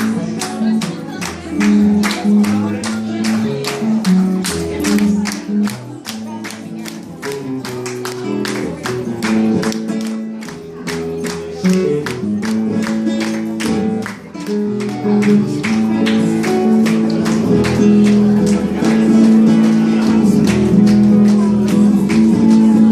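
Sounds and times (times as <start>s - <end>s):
acoustic string instrument strummed: 0.0s - 22.9s.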